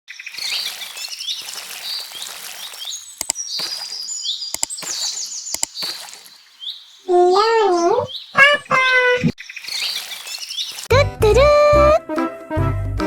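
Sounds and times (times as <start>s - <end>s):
birds chirping and twittering: 0.1s - 10.9s
sharp clicks: 3.2s - 3.4s, 4.5s - 5.8s.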